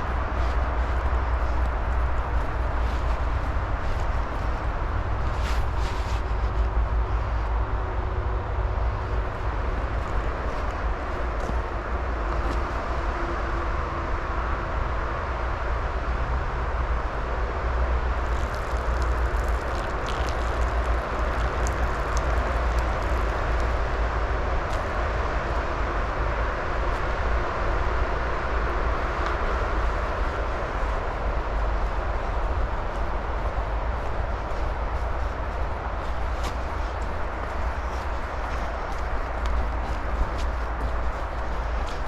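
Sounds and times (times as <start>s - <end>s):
raindrops ticking nearby: 0.0s - 7.2s, 18.2s - 25.2s, 28.9s - 42.0s
steady rain falling: 0.0s - 7.2s, 17.1s - 42.0s.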